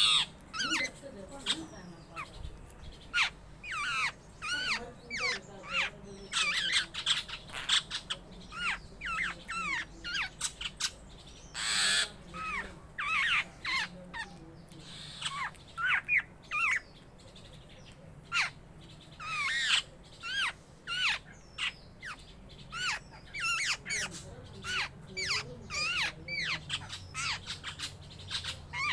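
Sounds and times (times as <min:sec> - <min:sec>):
harsh rasping bird call: 0:00.0 - 0:02.4, 0:03.1 - 0:16.9
birds calling: 0:00.0 - 0:28.9.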